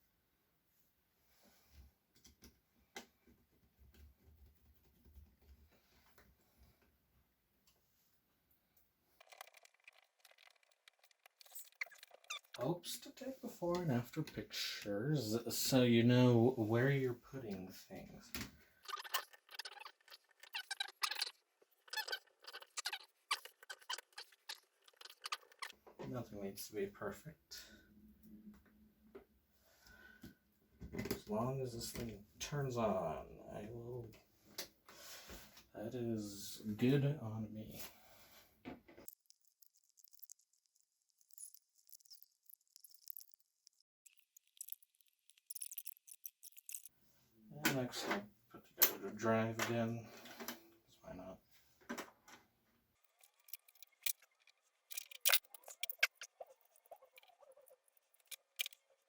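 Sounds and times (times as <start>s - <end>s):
laptop parts clicking and squeaking: 9.2s - 12.7s, 18.8s - 25.8s, 39.0s - 46.9s, 53.0s - 59.0s.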